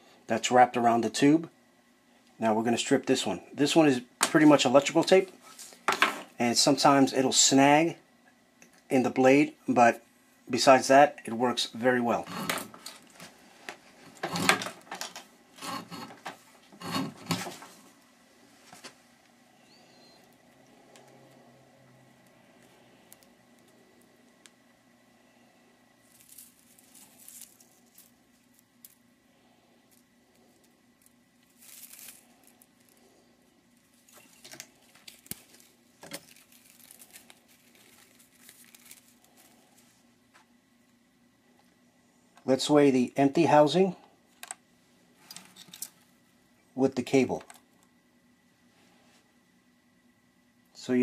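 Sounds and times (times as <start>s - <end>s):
cable scraping through wire stripper: 12.2s - 13.1s, 14.0s - 17.6s, 34.0s - 39.5s
tape crinkling and tearing: 26.0s - 29.0s, 30.4s - 33.0s, 33.9s - 39.8s.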